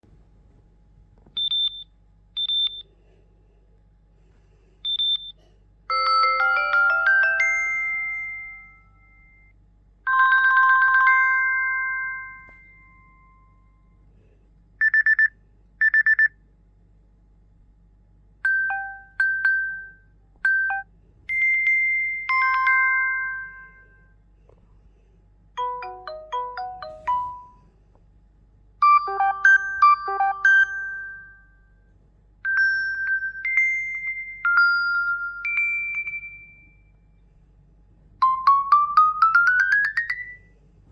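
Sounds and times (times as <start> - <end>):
smartwatch electronic ringtones: 38.2 - 40.4.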